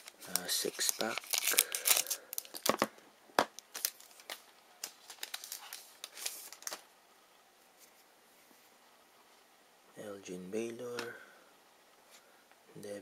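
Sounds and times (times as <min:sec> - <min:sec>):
wrapper tearing and crinkling: 0:00.0 - 0:02.9, 0:03.6 - 0:06.8.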